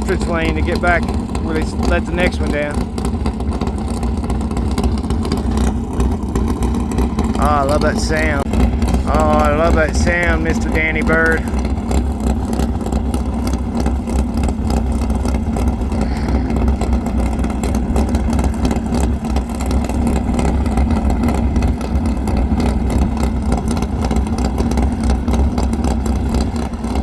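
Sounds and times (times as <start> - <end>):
race car engine running: 0.0 - 27.0.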